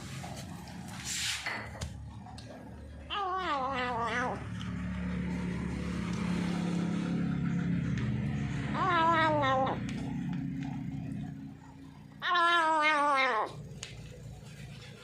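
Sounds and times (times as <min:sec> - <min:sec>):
cat wavering cry: 0:03.1 - 0:04.5, 0:08.7 - 0:09.8, 0:12.1 - 0:13.6.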